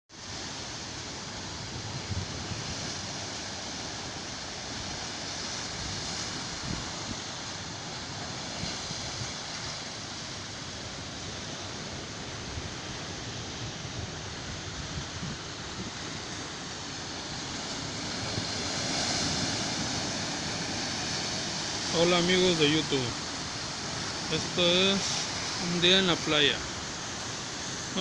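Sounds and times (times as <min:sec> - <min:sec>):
ocean surf: 0:00.1 - 0:28.0
wind buffeting microphone: 0:04.8 - 0:07.4, 0:11.5 - 0:16.5.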